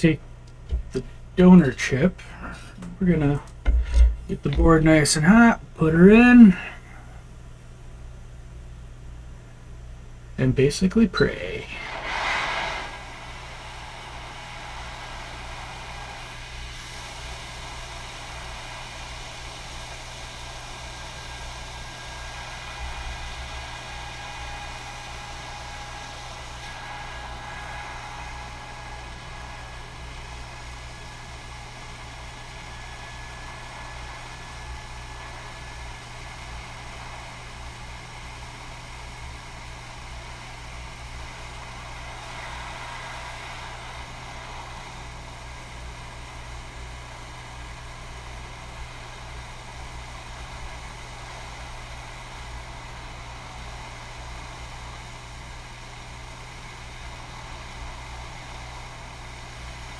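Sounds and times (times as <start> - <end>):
hot air rework station hissing: 0.5 - 7.8, 10.7 - 59.9.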